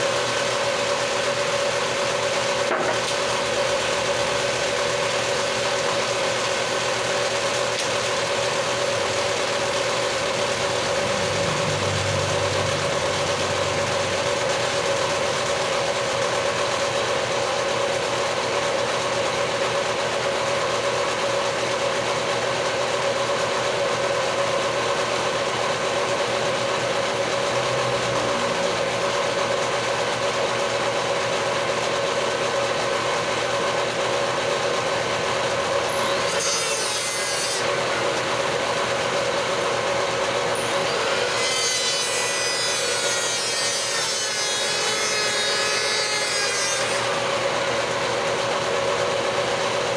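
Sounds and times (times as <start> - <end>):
power tool motor humming: 0.0 - 19.7.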